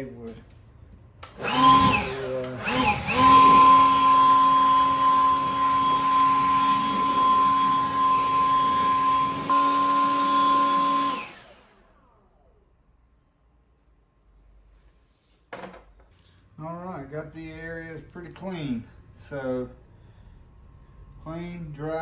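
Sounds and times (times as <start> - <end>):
power tool whining: 1.2 - 12.5.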